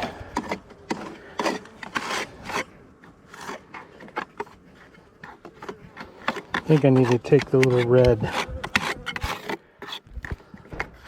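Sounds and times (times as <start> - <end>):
tool scraping honeycomb: 0.0 - 11.0.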